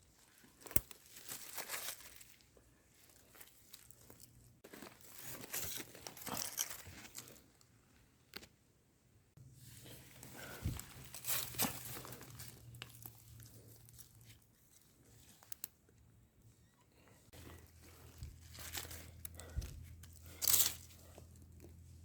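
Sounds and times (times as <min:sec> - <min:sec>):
dry leaves and twigs crackling: 0:00.0 - 0:07.7, 0:09.9 - 0:15.8, 0:17.3 - 0:22.0
twigs snapping: 0:00.6 - 0:02.4, 0:18.1 - 0:21.7.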